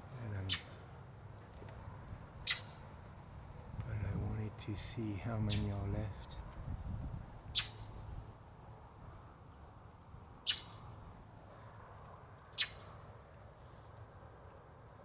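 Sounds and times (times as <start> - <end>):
songbird alarm calls: 0.4 - 0.8, 2.4 - 2.8, 5.4 - 5.8, 7.5 - 8.0, 10.4 - 10.8, 12.6 - 13.0.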